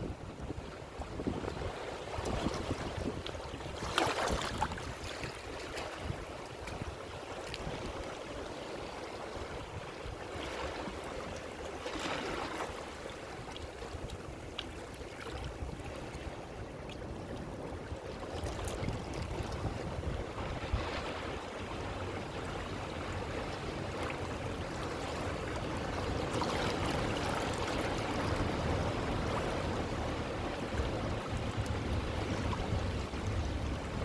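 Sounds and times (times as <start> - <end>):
low rumble of surf: 0.0 - 34.0
ocean waves breaking on shore: 0.0 - 34.0.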